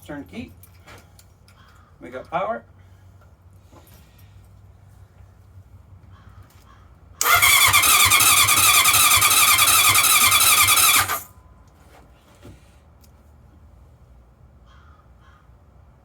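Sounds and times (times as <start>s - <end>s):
electric starter cranking engine: 7.2s - 11.3s.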